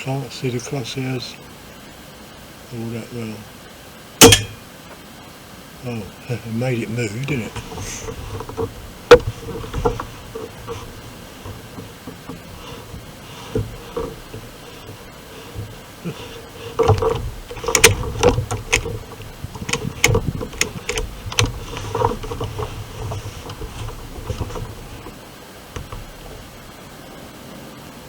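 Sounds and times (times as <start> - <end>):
sharp clicks and knocks: 4.2 - 4.6, 7.2 - 25.2, 25.8 - 26.7
low steady rumble: 4.2 - 28.0.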